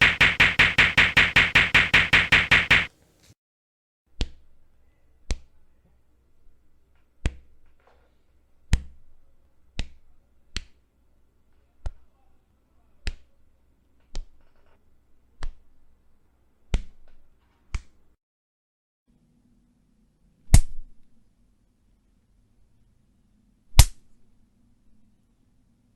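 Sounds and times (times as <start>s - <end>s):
punch sound effects: 0.0s - 2.9s.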